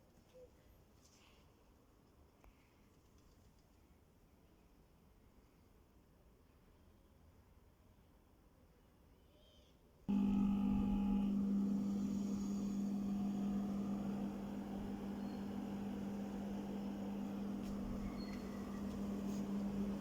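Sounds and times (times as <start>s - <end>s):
air conditioner humming: 10.1s - 20.0s.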